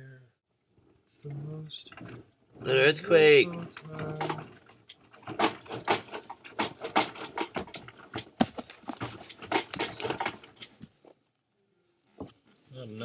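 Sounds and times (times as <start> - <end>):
clatter of knocks and rattling: 1.7 - 11.2.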